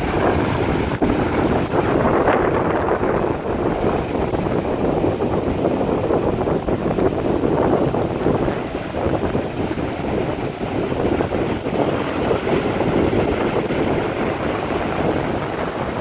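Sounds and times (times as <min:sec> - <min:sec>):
ocean waves and surf: 0:00.0 - 0:16.0
wind buffeting microphone: 0:00.0 - 0:16.0.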